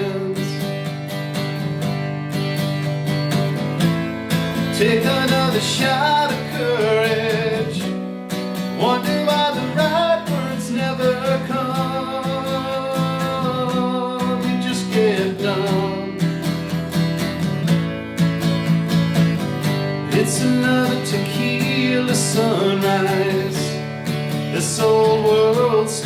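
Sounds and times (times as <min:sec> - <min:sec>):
person singing: 0:00.0 - 0:00.7, 0:04.7 - 0:07.9, 0:08.8 - 0:16.6, 0:20.0 - 0:23.8, 0:24.5 - 0:26.0
guitar strumming: 0:00.0 - 0:26.0.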